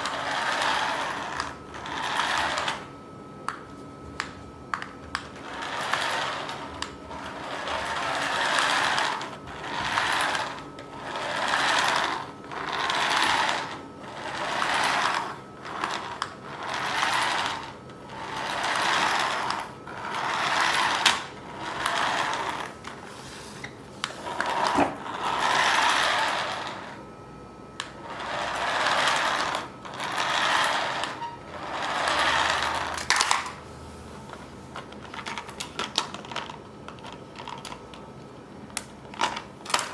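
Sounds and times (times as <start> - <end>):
toy car motor whirring: 0.0 - 2.9, 5.1 - 22.7, 24.1 - 27.0, 28.0 - 33.5.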